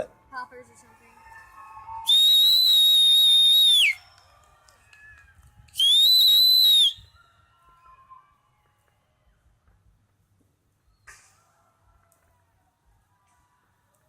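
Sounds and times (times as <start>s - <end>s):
shrill whistles: 1.6s - 4.0s, 5.8s - 7.3s.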